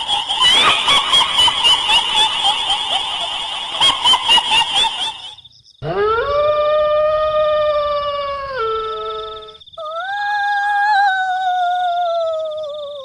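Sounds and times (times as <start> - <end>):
long drawn-out howl: 5.8 - 12.4.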